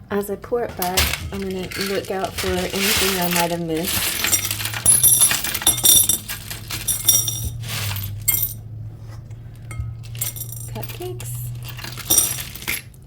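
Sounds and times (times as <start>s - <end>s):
metal charms clinking into bowl: 0.7s - 8.7s, 9.6s - 13.0s.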